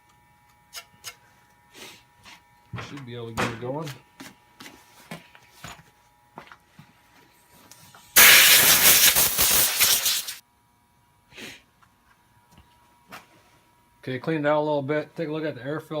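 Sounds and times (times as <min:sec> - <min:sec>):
pressurized spray hissing: 0:08.2 - 0:10.4
short spray puff: 0:08.2 - 0:10.4.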